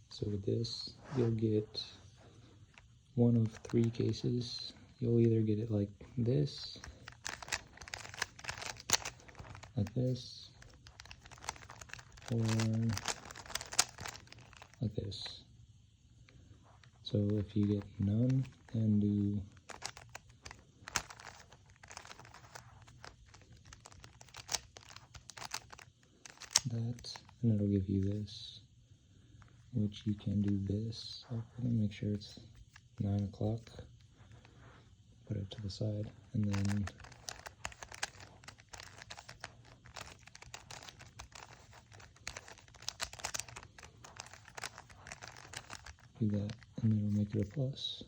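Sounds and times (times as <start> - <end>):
puzzle cube clicking and scraping: 2.7 - 4.9, 6.6 - 15.2, 16.7 - 27.4, 36.0 - 47.6.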